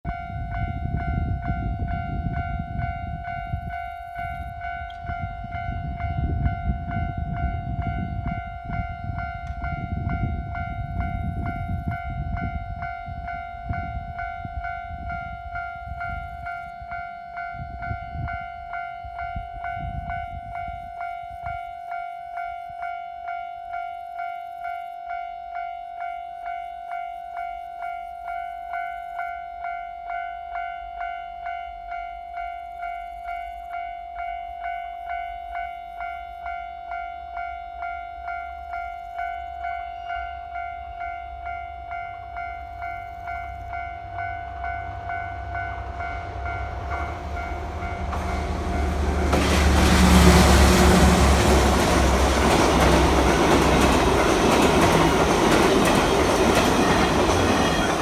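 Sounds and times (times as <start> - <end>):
passing train rumble: 0.1 - 21.6, 37.8 - 58.0
level-crossing warning bell: 0.1 - 58.0.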